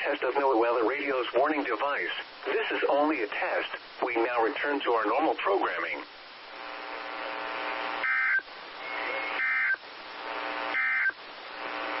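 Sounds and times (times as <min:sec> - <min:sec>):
steady buzzing hum: 0:05.8 - 0:12.0.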